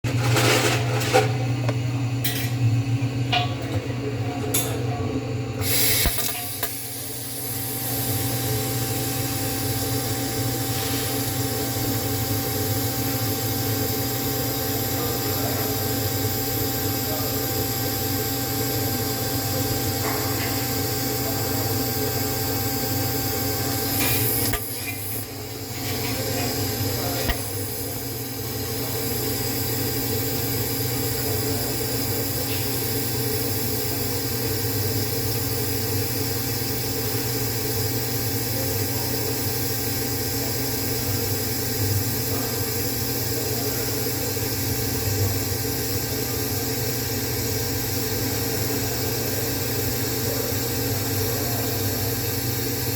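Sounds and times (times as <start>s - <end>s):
welding equipment hissing and humming: 0.1s - 52.9s.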